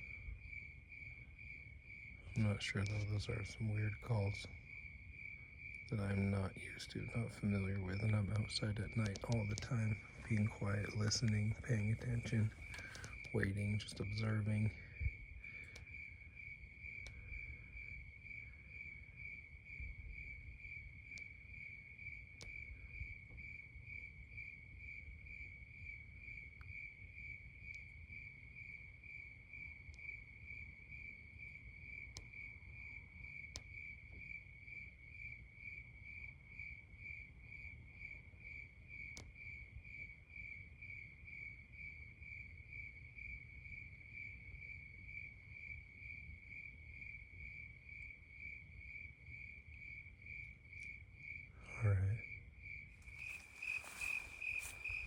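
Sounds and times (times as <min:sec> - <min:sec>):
crickets chirping: 0:00.0 - 0:55.0
faint clicks: 0:05.7 - 0:16.0, 0:17.0 - 0:17.6, 0:32.0 - 0:32.4, 0:33.4 - 0:34.3, 0:39.0 - 0:39.4.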